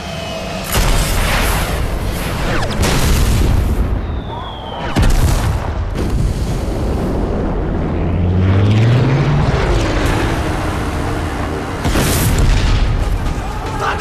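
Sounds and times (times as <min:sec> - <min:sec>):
dense steady roar: 0:05.4 - 0:14.0.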